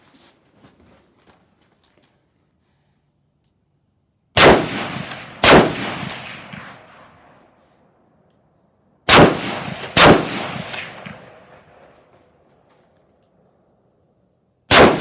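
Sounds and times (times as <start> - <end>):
rifle shots echoing: 4.4 - 7.6, 9.0 - 12.0, 14.7 - 15.0.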